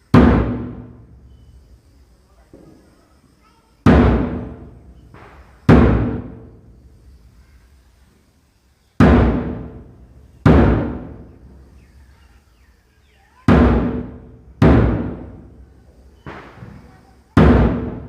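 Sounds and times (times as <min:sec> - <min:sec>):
large drum booming: 0:00.1 - 0:01.2, 0:03.8 - 0:06.8, 0:09.0 - 0:11.6, 0:13.5 - 0:15.6, 0:16.2 - 0:18.0.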